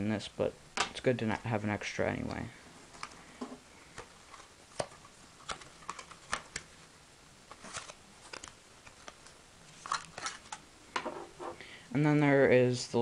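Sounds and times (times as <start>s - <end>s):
packaging clicks and rustles: 2.2s - 10.6s.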